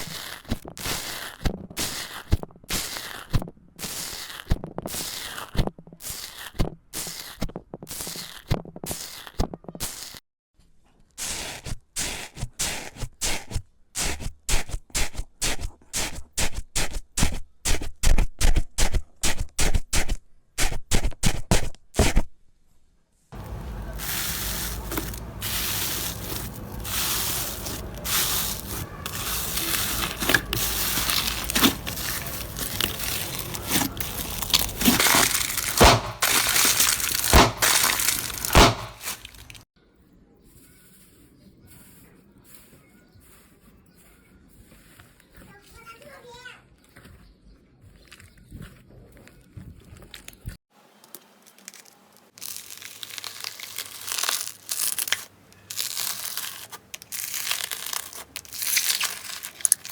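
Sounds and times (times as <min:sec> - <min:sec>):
slime crunching and crackling: 0:00.0 - 0:10.2, 0:23.4 - 0:39.7, 0:47.8 - 0:59.9.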